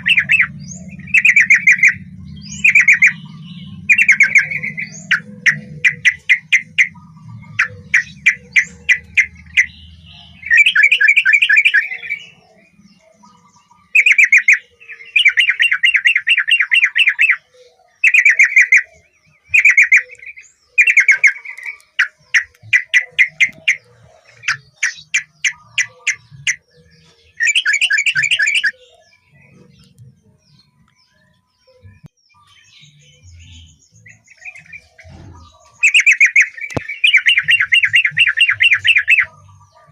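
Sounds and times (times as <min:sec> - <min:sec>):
bird bubbly chattering song: 0:00.0 - 0:30.7, 0:31.9 - 0:39.9.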